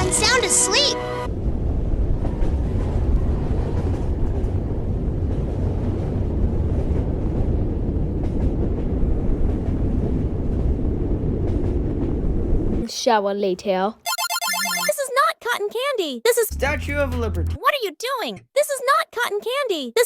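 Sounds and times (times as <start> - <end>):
low bass rumbling: 16.5 - 17.6.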